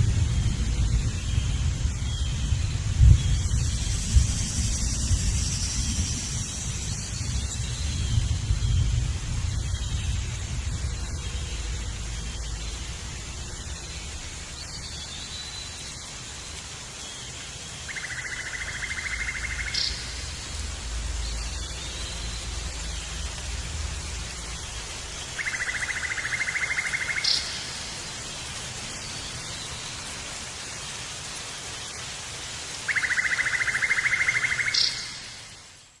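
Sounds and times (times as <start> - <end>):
outdoor hiss with low rumble: 0.0 - 36.0.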